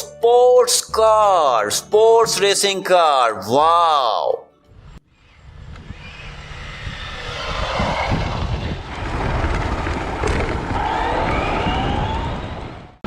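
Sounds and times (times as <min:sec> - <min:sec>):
racing car engine approaching: 0:04.8 - 0:13.0.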